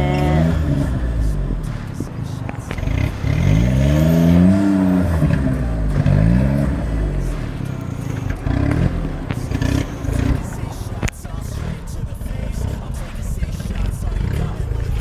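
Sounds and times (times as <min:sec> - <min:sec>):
vehicle engine revving: 0:00.0 - 0:15.0.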